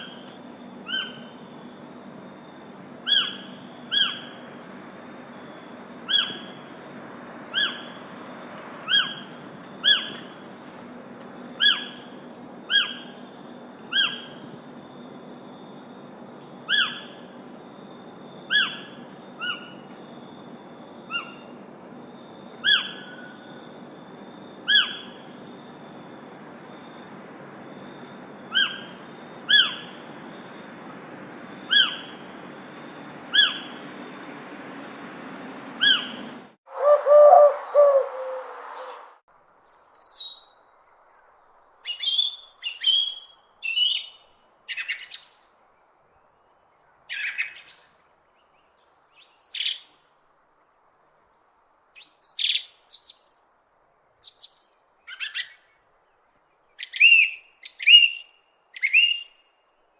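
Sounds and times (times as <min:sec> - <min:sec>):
bird sharp falling call: 0:36.7 - 0:39.0.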